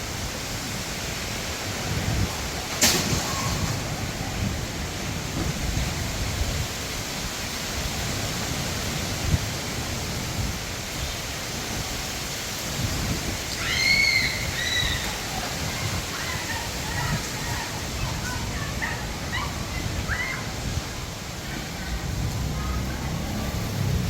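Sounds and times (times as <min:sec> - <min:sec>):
steady rain: 0:00.0 - 0:24.0
wind gusting against microphone: 0:00.0 - 0:24.0.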